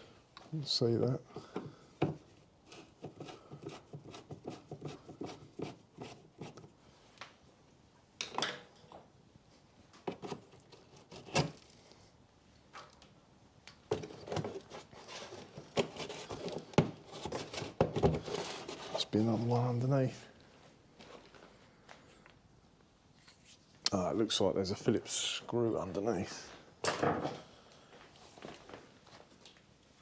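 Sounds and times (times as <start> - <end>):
scraping and rustling: 13.9 - 20.2.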